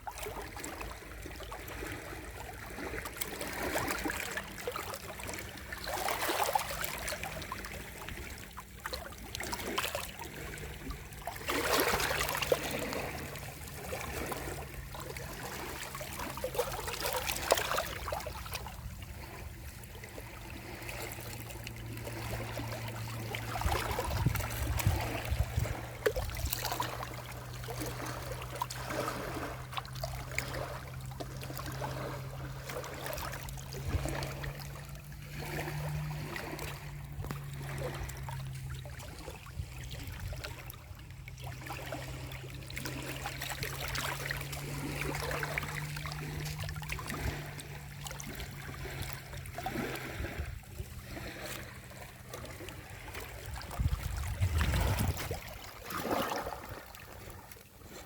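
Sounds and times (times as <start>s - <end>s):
sea waves washing in: 0.0s - 58.0s.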